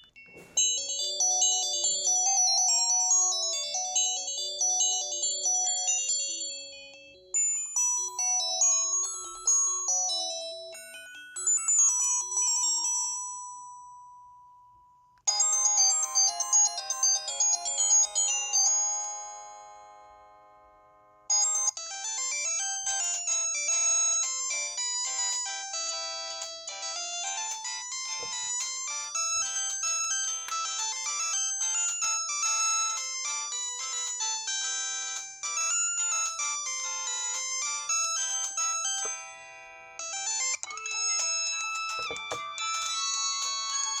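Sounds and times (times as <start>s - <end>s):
polyphonic phone ringtone melody: 0.0s - 14.4s, 15.3s - 44.0s.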